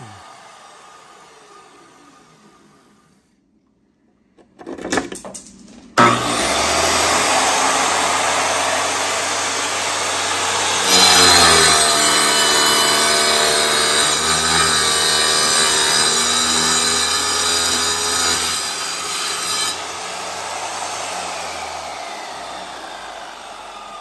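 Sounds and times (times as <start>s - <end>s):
saw motor whine: 0.0s - 3.2s, 6.0s - 24.0s
saw blade grinding stone: 10.0s - 23.2s.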